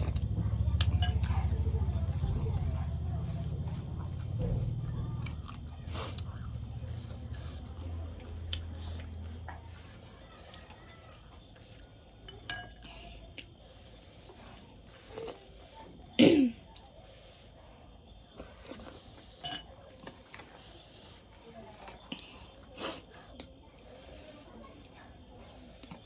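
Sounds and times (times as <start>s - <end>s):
utensil clinking against dish: 0.8s - 1.6s, 12.2s - 12.8s, 19.4s - 19.8s
person coughing: 16.2s - 16.6s.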